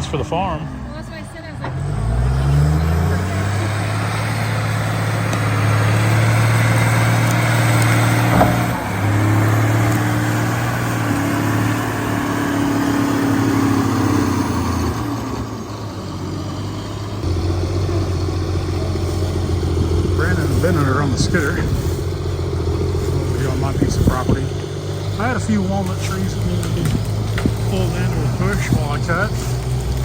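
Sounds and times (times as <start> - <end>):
large engine running: 0.0 - 30.0.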